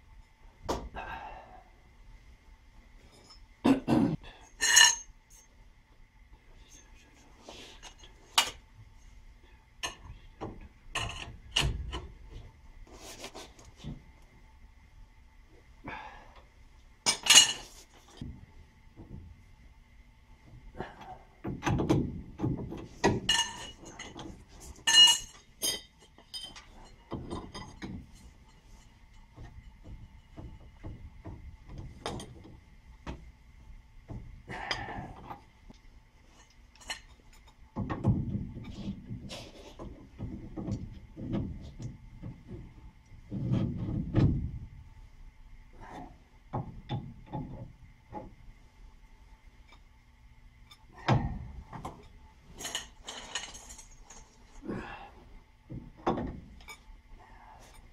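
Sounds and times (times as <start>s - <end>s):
tools and metal parts clunking: 4.5s - 5.5s, 9.8s - 12.4s, 17.0s - 18.3s, 20.9s - 33.3s, 36.3s - 44.6s, 50.7s - 54.6s
metal tools clinking: 4.6s - 5.5s, 23.3s - 27.9s, 52.6s - 54.4s.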